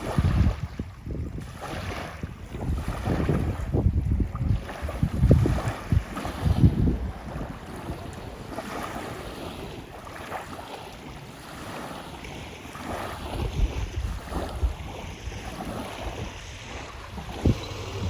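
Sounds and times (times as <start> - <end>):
water lapping around boat: 0.0 - 18.0
wind buffeting microphone: 0.0 - 18.0.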